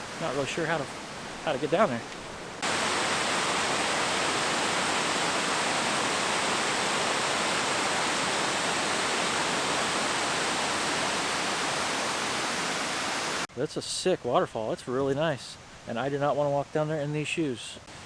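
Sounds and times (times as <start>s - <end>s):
creek waterfall rushing: 0.0s - 13.5s.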